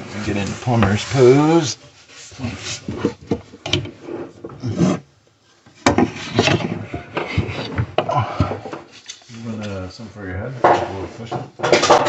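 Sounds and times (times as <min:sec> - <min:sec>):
rubbing and scraping of plastic pipe: 0:00.0 - 0:05.1, 0:05.7 - 0:08.0.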